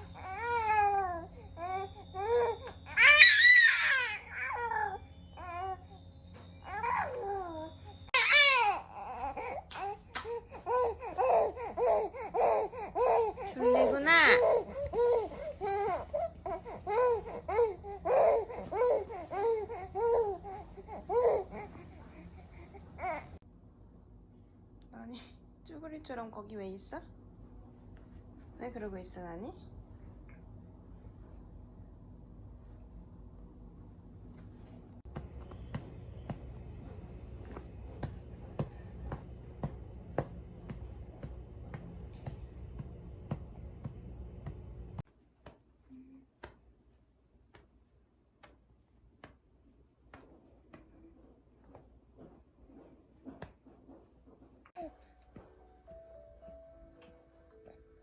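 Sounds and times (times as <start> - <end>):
low hum: 26.9 - 45.0.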